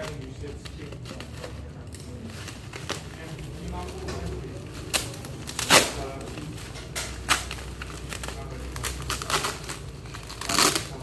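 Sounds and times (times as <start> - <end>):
packaging rustling and clicking: 0.0 - 11.0.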